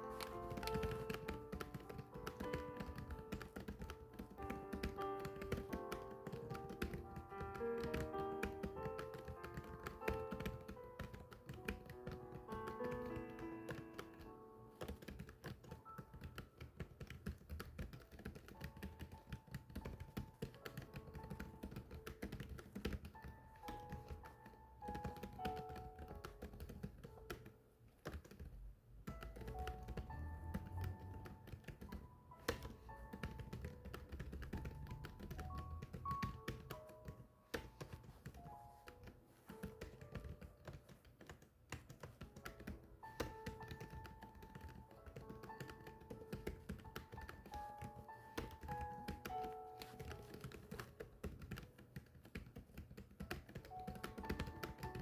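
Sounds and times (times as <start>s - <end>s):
melodic background music: 0.0s - 16.8s, 29.1s - 40.9s, 42.2s - 51.5s
fast typing on keyboard: 0.0s - 55.0s.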